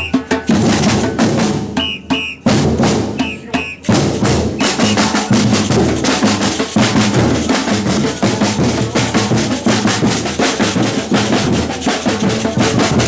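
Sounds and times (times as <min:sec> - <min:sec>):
short high notes: 0:00.0 - 0:02.6
snare drums: 0:00.0 - 0:13.0.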